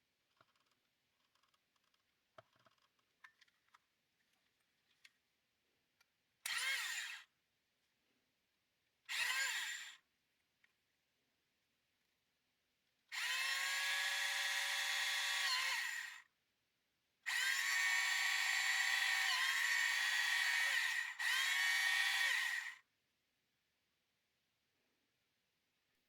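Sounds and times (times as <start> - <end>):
small electric drill motor whining: 6.5 - 7.3, 9.1 - 10.0, 13.1 - 16.3, 17.3 - 22.8.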